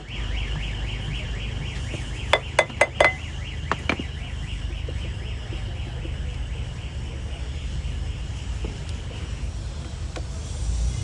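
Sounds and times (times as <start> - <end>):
warbling electronic alarm tone: 0.0 - 8.6.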